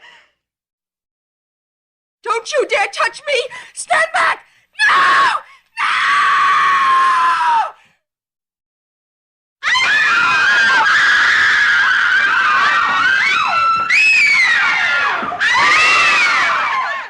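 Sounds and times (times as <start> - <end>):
high-pitched voices screaming: 9.6 - 17.0.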